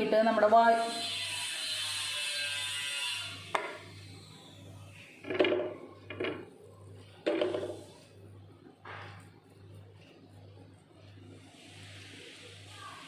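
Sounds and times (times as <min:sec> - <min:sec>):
utensils knocking on cookware: 0:05.2 - 0:06.5, 0:07.2 - 0:08.0.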